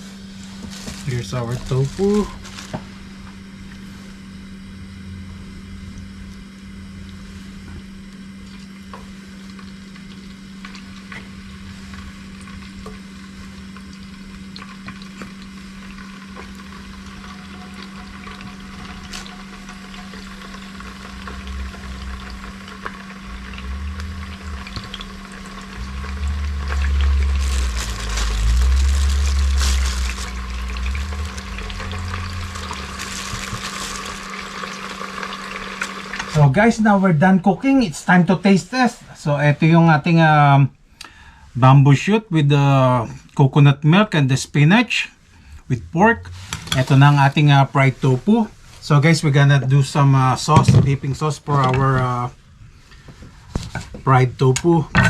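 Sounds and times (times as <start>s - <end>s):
low hum: 0.0s - 39.6s, 45.2s - 55.0s
food sizzling in hot oil: 0.5s - 3.2s, 8.7s - 36.4s
low rumble: 20.6s - 34.8s.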